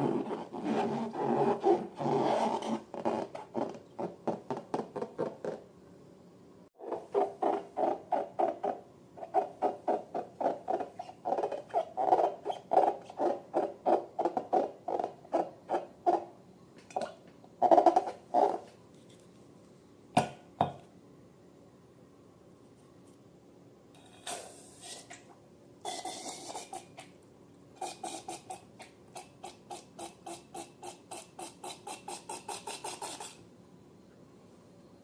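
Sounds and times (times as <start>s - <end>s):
balloons rubbed and squeezed: 0.0s - 4.2s, 27.8s - 28.6s, 30.8s - 33.4s.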